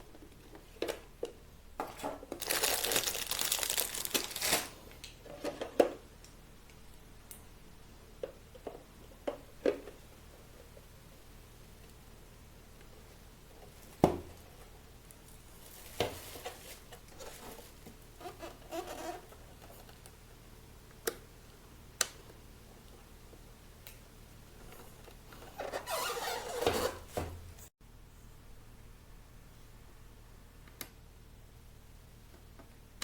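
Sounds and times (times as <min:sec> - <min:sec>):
rustling: 0:13.6 - 0:20.1, 0:24.5 - 0:27.7.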